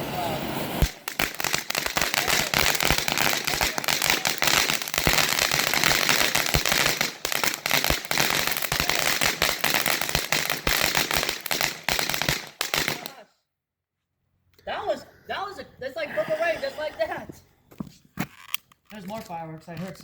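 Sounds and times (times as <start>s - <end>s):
firework crackling: 0.0s - 13.2s.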